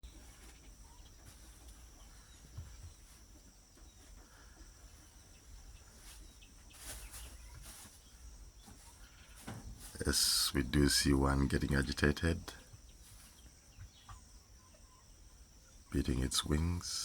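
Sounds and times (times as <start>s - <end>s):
distant bird chirps: 0.0s - 17.0s
short rustling: 5.7s - 10.1s.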